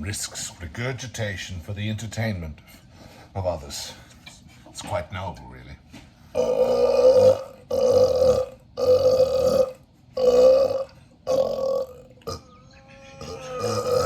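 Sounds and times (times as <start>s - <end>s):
man burping: 6.4s - 14.0s.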